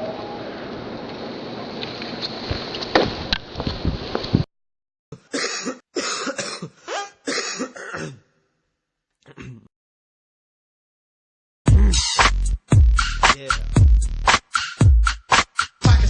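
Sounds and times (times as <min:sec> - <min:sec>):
person coughing: 0:05.2 - 0:08.4, 0:09.3 - 0:09.7, 0:11.7 - 0:12.0.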